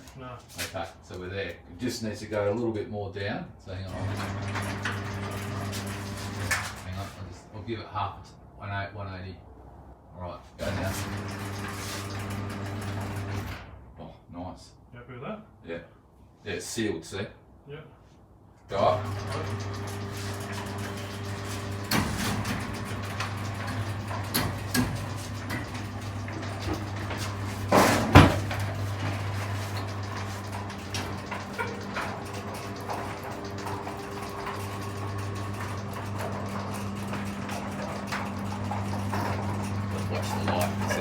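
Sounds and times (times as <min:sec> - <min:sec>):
garage door motor humming: 0:03.8 - 0:07.2, 0:10.6 - 0:13.8, 0:18.7 - 0:41.0
door curtain rattling and knocking: 0:19.3 - 0:36.1
loud clunk: 0:19.6 - 0:37.3.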